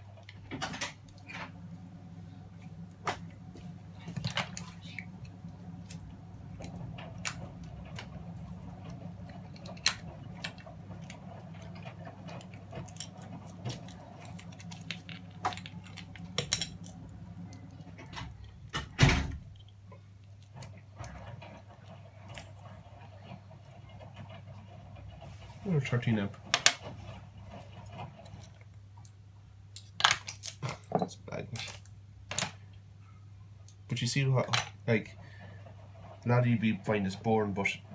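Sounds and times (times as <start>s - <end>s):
small metal parts clinking: 29.8s - 32.5s.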